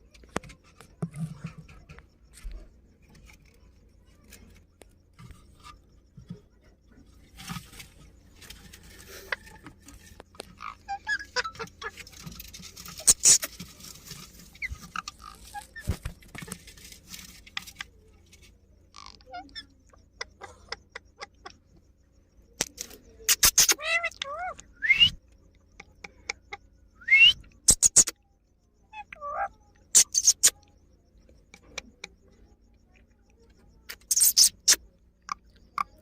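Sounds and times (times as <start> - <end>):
parakeets squawking: 10.6 - 13.5, 29.0 - 30.5.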